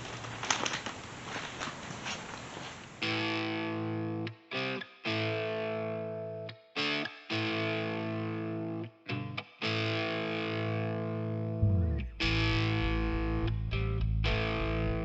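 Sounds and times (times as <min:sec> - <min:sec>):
brief rustling: 0:00.0 - 0:03.0
distorted electric guitar chords: 0:03.0 - 0:15.0.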